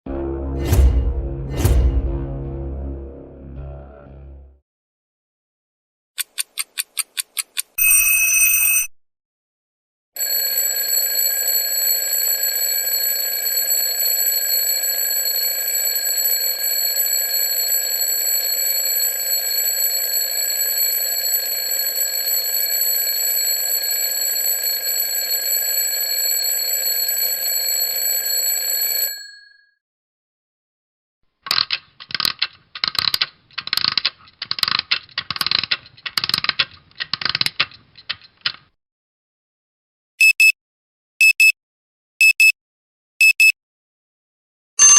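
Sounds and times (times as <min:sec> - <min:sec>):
alarm clock ringing: 0:07.8 - 0:08.9, 0:10.2 - 0:29.6.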